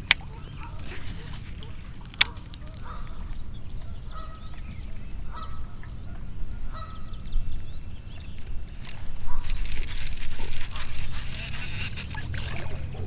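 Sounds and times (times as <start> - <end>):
goose honking: 0.0 - 7.1
small birds chirping: 0.0 - 13.0.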